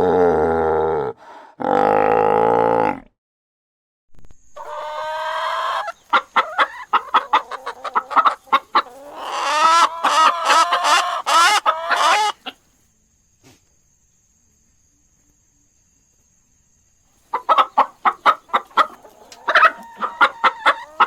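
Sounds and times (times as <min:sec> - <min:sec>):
chicken clucking and cackling: 0:04.6 - 0:12.7, 0:17.2 - 0:21.0.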